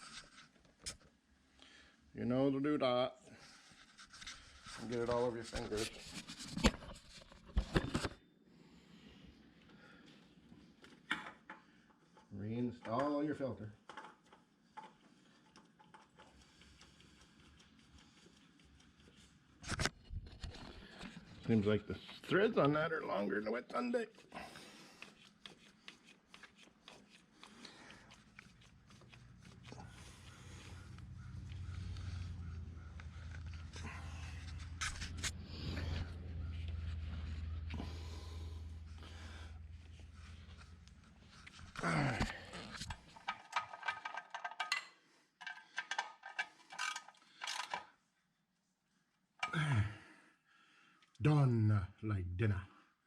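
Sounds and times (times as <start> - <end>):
hands turning oil filter: 13.8 - 19.8, 24.1 - 48.0
low hum: 29.7 - 41.5
metal tools clinking: 43.0 - 47.8.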